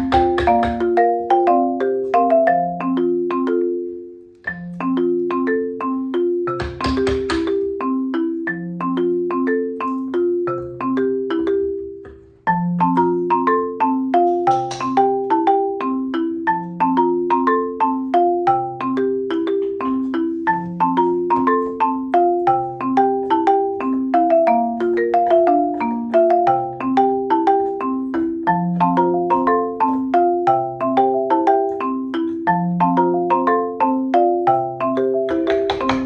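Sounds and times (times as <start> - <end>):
marimba tune over bass: 0.0 - 36.0.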